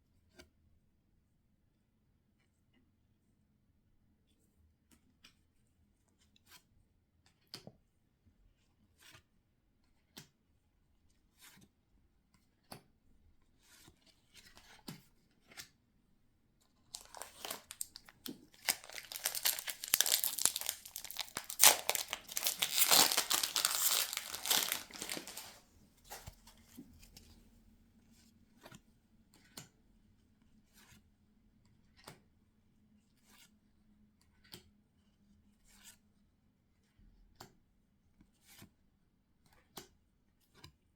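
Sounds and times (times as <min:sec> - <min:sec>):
packaging torn and crinkled: 0:16.9 - 0:26.3.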